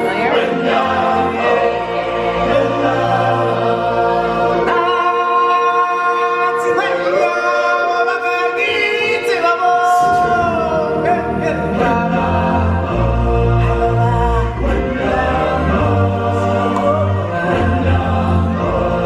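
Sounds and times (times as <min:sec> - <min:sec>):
choir singing: 0:00.0 - 0:19.0
show music: 0:00.0 - 0:19.0.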